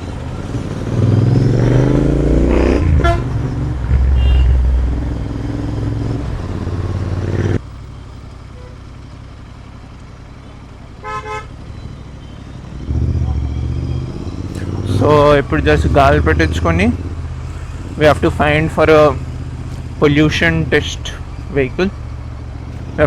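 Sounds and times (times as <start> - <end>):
motorcycle engine revving: 0.0 - 8.2, 11.6 - 23.0
traffic hum: 0.0 - 23.0
vehicle horn toot: 2.8 - 5.2, 11.0 - 11.6.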